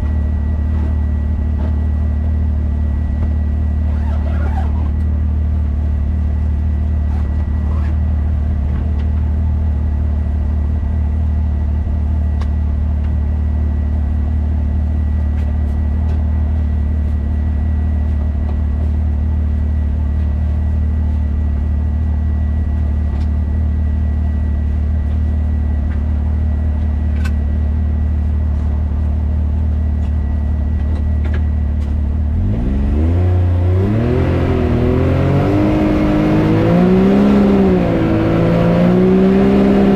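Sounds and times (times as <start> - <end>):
engine running and revving: 3.1 - 9.3, 28.1 - 39.9.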